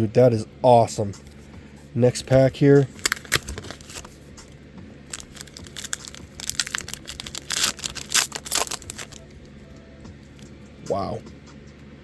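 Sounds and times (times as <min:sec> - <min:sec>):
foil wrapper crinkling and tearing: 0:02.9 - 0:04.2, 0:05.1 - 0:09.3.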